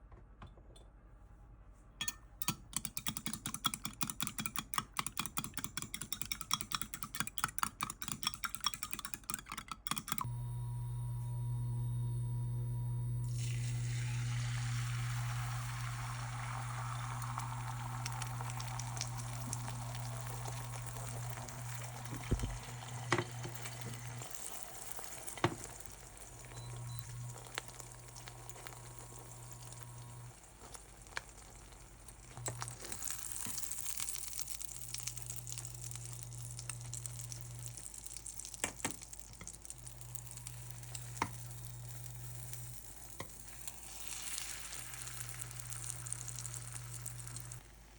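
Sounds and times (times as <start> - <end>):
food sizzling in frying pan: 10.3 - 47.9
low hum: 25.8 - 30.4.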